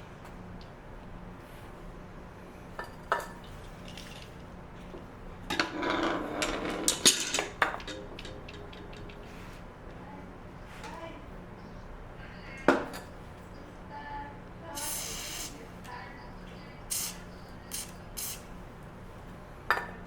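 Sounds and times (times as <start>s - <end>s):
metal tools clinking: 5.6s - 9.6s.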